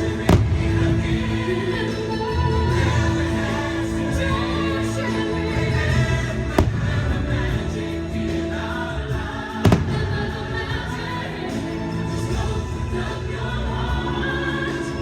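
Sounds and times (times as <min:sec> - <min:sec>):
choir singing holiday music: 0:00.0 - 0:15.0
sharp firework bangs: 0:09.7 - 0:10.3.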